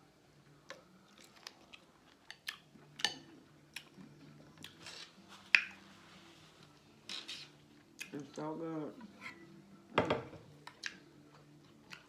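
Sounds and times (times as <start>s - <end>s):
mouth smacking and chewing: 0.7s - 3.1s, 3.7s - 5.8s, 7.8s - 8.3s, 10.6s - 12.0s.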